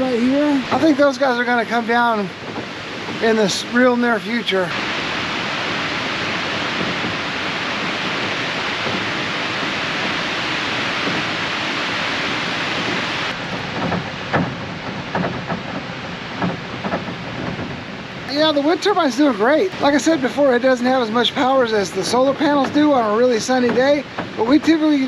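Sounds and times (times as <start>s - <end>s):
storm wind rushing: 0.0s - 25.0s
short knocks: 12.8s - 20.2s.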